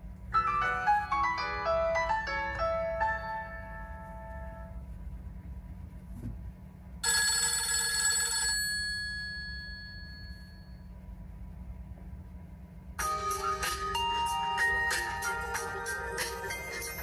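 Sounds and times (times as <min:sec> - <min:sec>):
steady low hum: 0:00.0 - 0:07.3, 0:08.5 - 0:17.0
phone ringtone chord: 0:07.0 - 0:10.9, 0:13.0 - 0:17.0.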